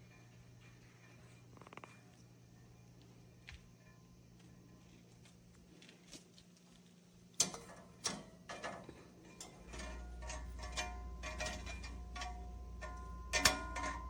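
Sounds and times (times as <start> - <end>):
low hum: 9.3 - 14.0.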